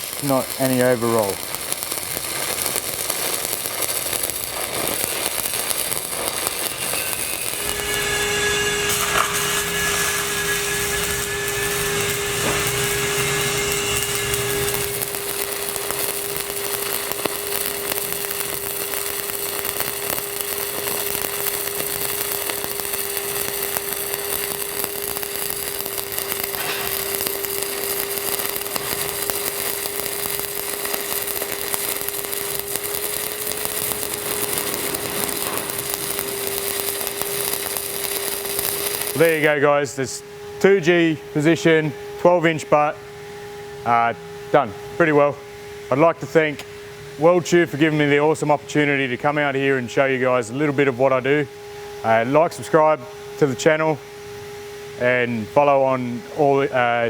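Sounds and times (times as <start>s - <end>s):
welding arc crackling: 0.0s - 43.0s
steady hum: 0.0s - 57.0s.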